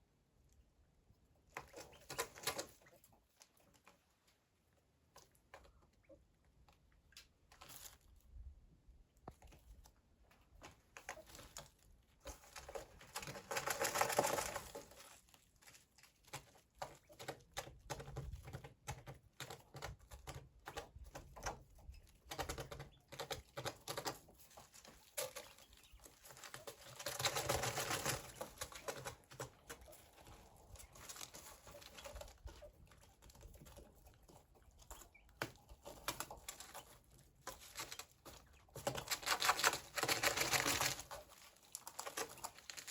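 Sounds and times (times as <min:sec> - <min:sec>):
quail pecking tapping clicks: 0:01.5 - 0:03.9, 0:16.2 - 0:42.9.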